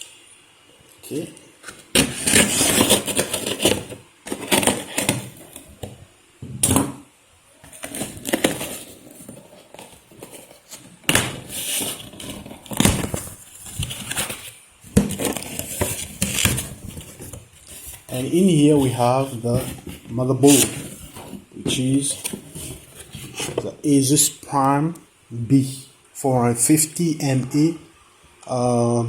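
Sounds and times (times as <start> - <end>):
packaging rustling and crinkling: 1.0 - 6.0, 7.6 - 23.7
cardboard box tearing: 1.9 - 5.7, 7.7 - 18.2.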